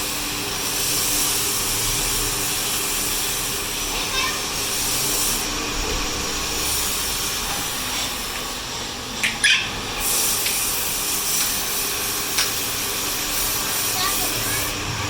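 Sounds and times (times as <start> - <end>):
machine running: 0.0 - 15.0.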